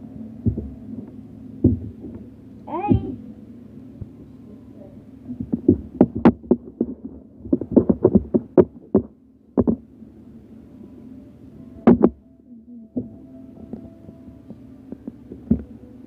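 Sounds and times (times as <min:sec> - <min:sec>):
soft knocks and thumps: 0:00.4 - 0:02.3, 0:05.3 - 0:09.8.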